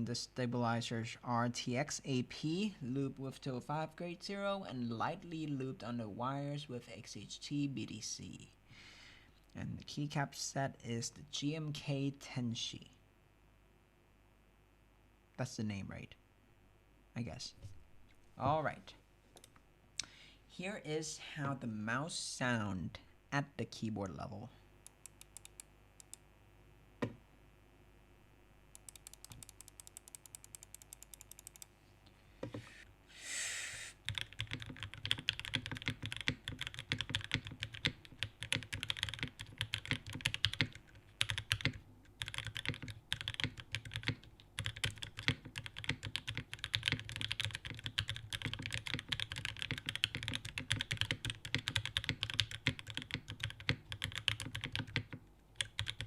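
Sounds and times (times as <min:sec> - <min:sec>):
fast typing on mechanical keyboard: 0:28.8 - 0:31.7, 0:34.0 - 0:56.0.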